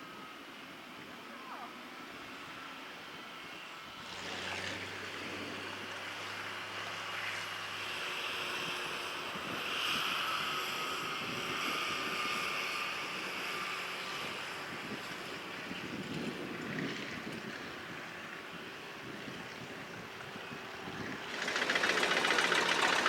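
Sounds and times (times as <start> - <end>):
wind buffeting microphone: 8.3 - 23.0
tractor engine running: 19.0 - 23.0.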